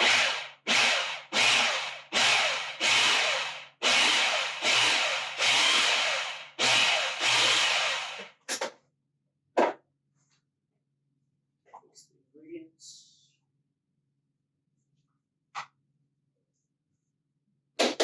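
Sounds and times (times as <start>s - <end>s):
food processor pulsing: 0.0s - 8.4s.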